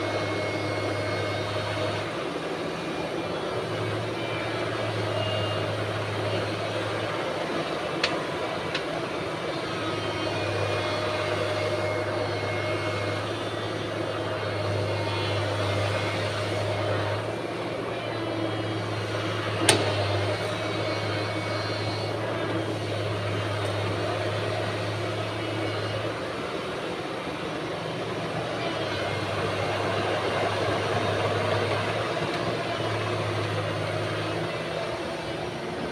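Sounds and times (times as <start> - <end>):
diesel engine running: 0.0 - 35.9
hydraulic whine: 0.0 - 35.9.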